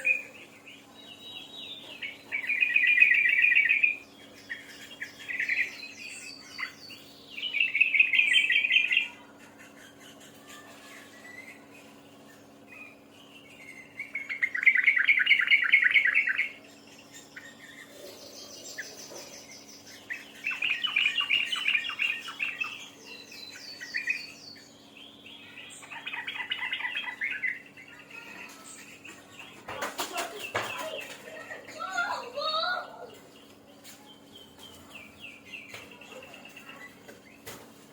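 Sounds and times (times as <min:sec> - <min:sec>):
songbird chirping trills: 0:00.0 - 0:37.8
steady low hum: 0:00.0 - 0:37.9.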